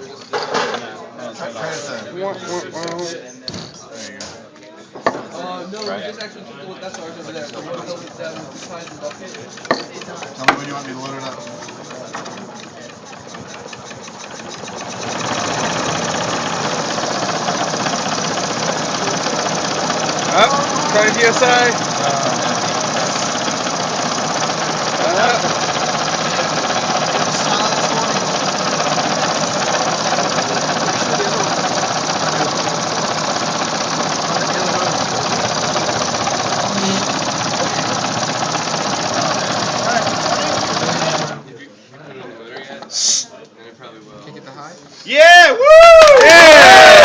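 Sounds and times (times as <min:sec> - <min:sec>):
air compressor clattering: 0:05.2 - 0:41.5.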